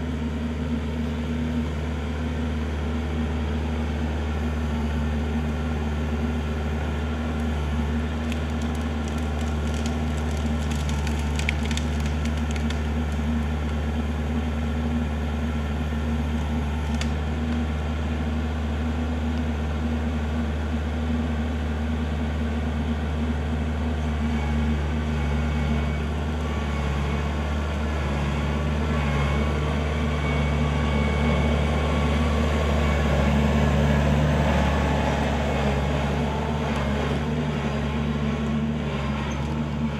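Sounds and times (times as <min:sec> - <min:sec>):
tractor diesel engine running: 0:00.0 - 0:39.9
wood cracking and splintering: 0:08.1 - 0:13.8, 0:16.7 - 0:17.6.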